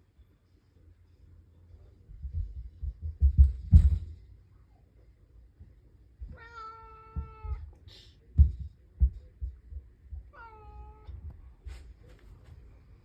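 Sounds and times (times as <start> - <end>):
thuds of children running upstairs: 2.2 - 4.2.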